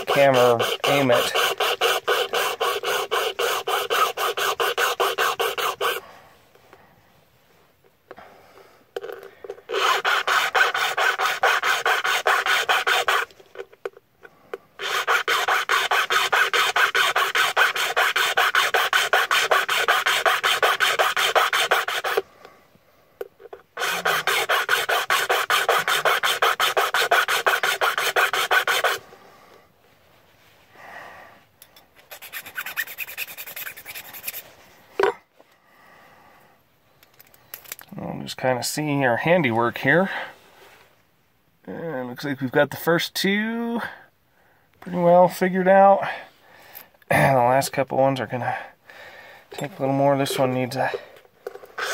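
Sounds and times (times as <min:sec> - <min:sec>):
hand file rasping on key: 0:00.0 - 0:06.0, 0:09.7 - 0:13.7, 0:14.8 - 0:22.2, 0:23.5 - 0:29.0, 0:32.1 - 0:34.4.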